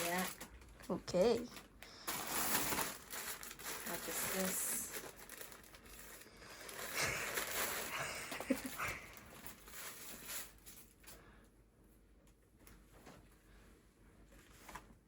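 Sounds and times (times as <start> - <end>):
plastic packaging rustling: 0.0 - 11.0.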